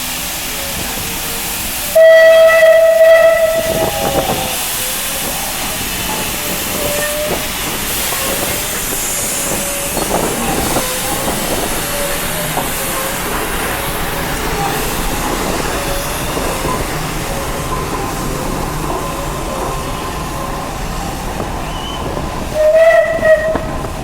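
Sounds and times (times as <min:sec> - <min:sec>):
steam hissing: 0:00.0 - 0:24.0
steam locomotive whistle: 0:00.2 - 0:13.3, 0:19.2 - 0:23.9.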